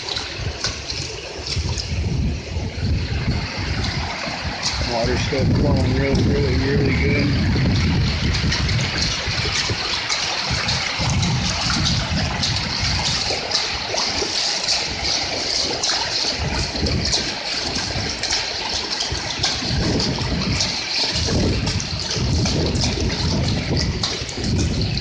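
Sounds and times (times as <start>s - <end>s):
floodwater rushing: 0.0s - 25.0s
wind rumble on microphone: 0.0s - 25.0s.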